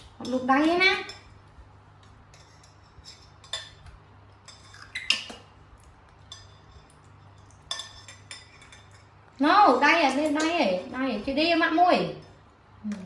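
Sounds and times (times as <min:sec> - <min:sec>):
kitchenware clinking and clattering: 0:06.2 - 0:09.2, 0:09.8 - 0:11.1.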